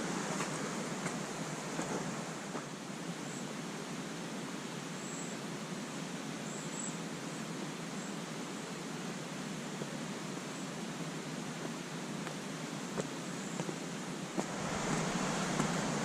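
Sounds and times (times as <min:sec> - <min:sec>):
river flowing over rocks: 0:09.4 - 0:16.0.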